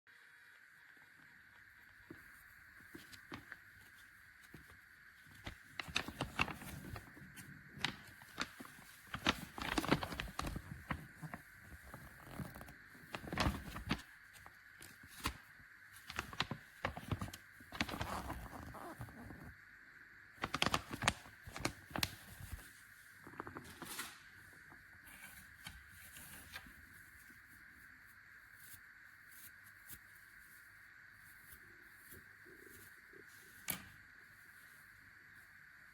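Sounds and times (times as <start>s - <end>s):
objects being handled: 2.1s - 15.4s.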